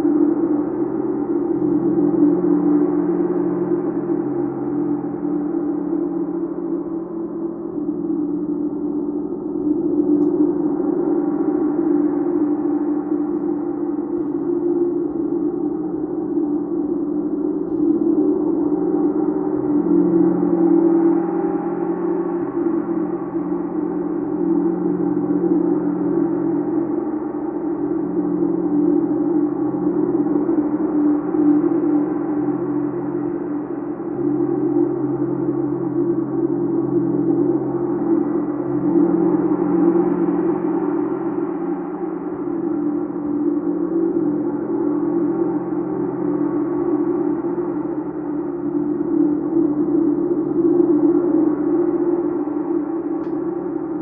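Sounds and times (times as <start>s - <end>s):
gong drone: 0.0s - 7.1s.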